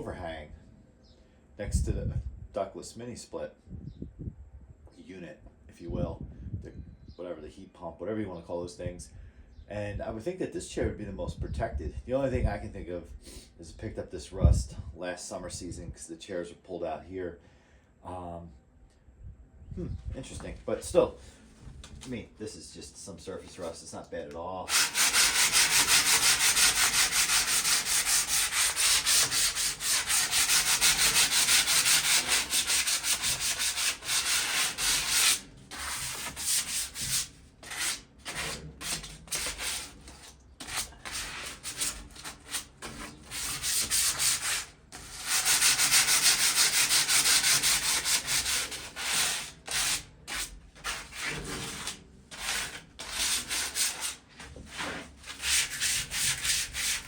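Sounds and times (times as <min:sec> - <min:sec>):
sandpaper scraping metal: 0:24.7 - 0:57.0.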